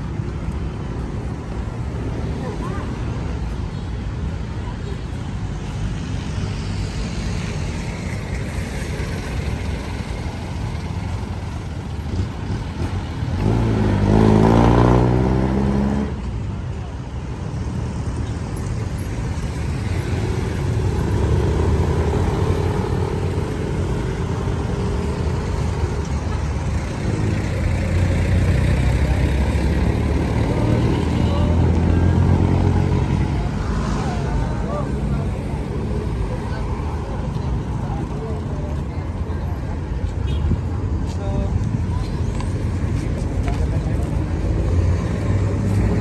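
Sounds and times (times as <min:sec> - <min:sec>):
rumble of passing traffic: 0:00.0 - 0:46.0
loud vehicle engine passing: 0:11.3 - 0:16.5, 0:19.3 - 0:39.8.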